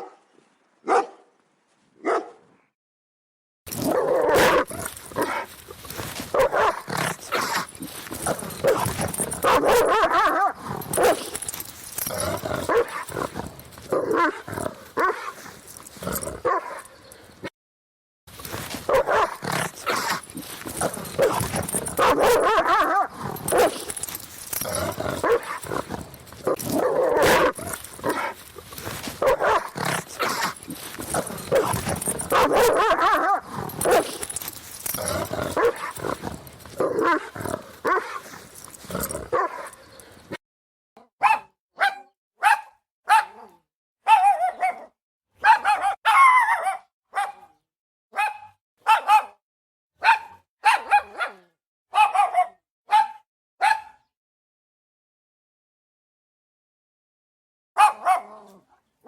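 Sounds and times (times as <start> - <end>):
dog barking: 0.0 - 1.3, 2.0 - 2.5, 3.9 - 5.5, 6.3 - 11.6, 12.6 - 15.4, 16.4 - 17.0, 18.9 - 24.2, 25.1 - 28.4, 29.2 - 34.5, 35.5 - 36.2, 36.8 - 38.3, 39.3 - 39.8, 41.2 - 49.4, 50.0 - 54.1, 57.8 - 58.6.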